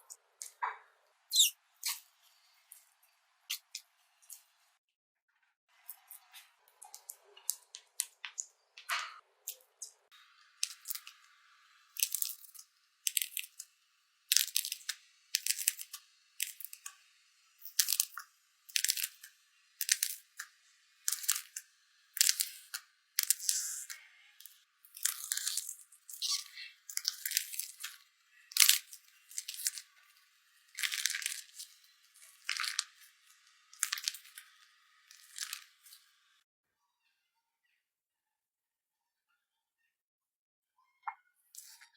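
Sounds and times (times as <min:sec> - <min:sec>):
slime squeezed crackling: 0:12.0 - 0:13.6, 0:14.3 - 0:16.9, 0:17.6 - 0:20.4, 0:21.1 - 0:21.6, 0:22.2 - 0:24.0, 0:24.9 - 0:30.0, 0:30.7 - 0:33.1, 0:33.7 - 0:36.0.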